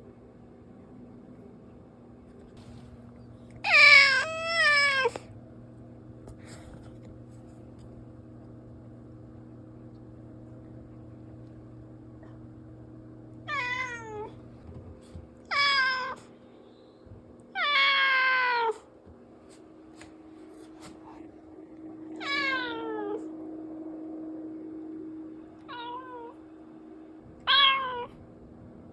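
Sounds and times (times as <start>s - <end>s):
low steady hum: 0.0s - 28.9s
cat meowing: 3.6s - 5.2s, 13.5s - 14.4s, 17.6s - 18.8s, 22.2s - 23.2s, 25.6s - 26.4s, 27.4s - 28.2s.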